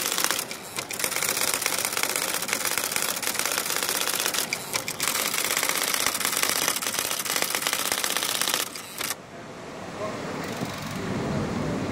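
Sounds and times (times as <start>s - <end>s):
electric typewriter typing: 0.0s - 9.2s.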